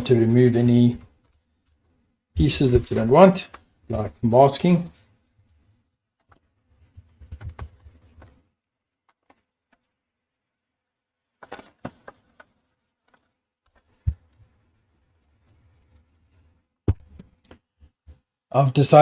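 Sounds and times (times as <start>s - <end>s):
light rustles of handling plastic: 11.3s - 16.6s.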